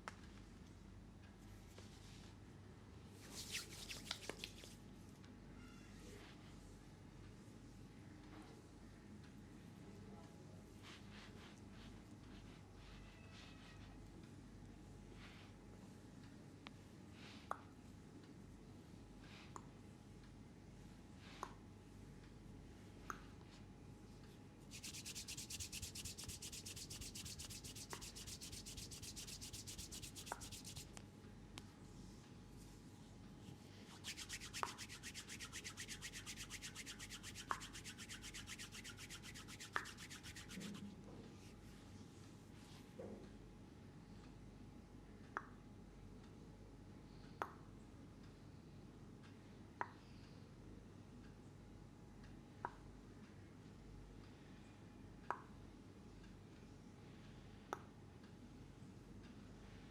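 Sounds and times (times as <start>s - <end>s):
rapid rubbing strokes: 3.2s - 4.8s, 24.7s - 31.0s, 33.7s - 40.9s.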